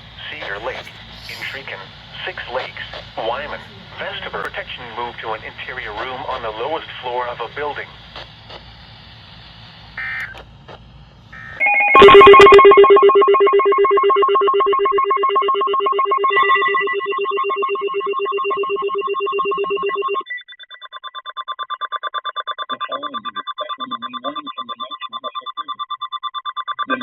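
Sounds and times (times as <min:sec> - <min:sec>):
rapidly pulsing beep: 0:00.2 - 0:08.7, 0:10.0 - 0:10.4, 0:11.4 - 0:27.0
buzzing digital data bursts: 0:10.0 - 0:10.4
warbling electronic alert tone: 0:11.4 - 0:27.0.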